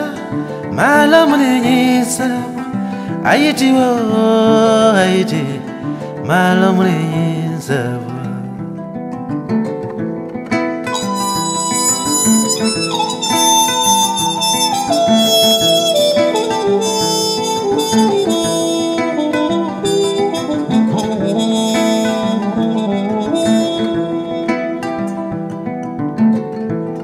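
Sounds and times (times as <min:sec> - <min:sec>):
plucked-string accompaniment: 0:00.0 - 0:27.0
lead instrument long notes: 0:10.8 - 0:25.5.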